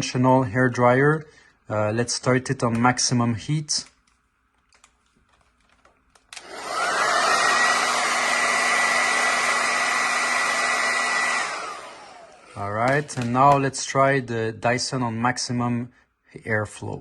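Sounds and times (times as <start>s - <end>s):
hair dryer switch click: 6.3s - 7.4s
hair dryer whining air rush: 6.3s - 13.6s.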